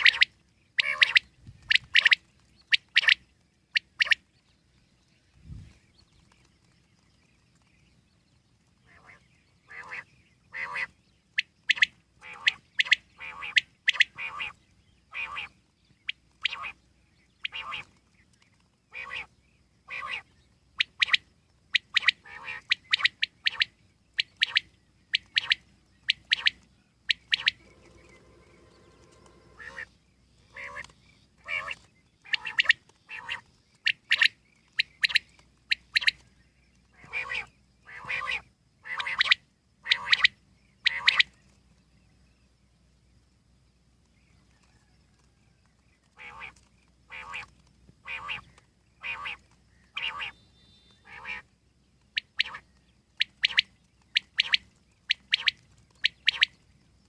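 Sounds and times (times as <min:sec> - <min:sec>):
quail calling: 0:00.0 - 0:04.3, 0:08.9 - 0:15.5, 0:16.4 - 0:16.8, 0:17.4 - 0:17.9, 0:18.9 - 0:21.2, 0:21.8 - 0:36.2, 0:36.9 - 0:41.3, 0:46.1 - 0:51.5, 0:52.1 - 0:56.6
faint steady buzz: 0:14.6 - 0:32.3.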